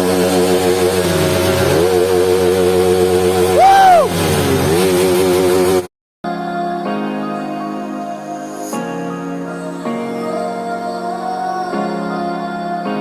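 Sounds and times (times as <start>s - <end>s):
motorcycle engine running: 0.0s - 5.9s
rising-and-falling tone: 0.0s - 5.9s.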